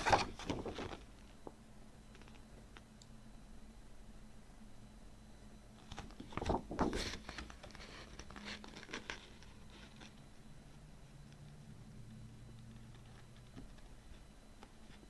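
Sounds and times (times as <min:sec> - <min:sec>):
packaging rustling and scraping: 0:00.0 - 0:01.3, 0:05.8 - 0:10.2
faint steady hum: 0:00.0 - 0:15.0.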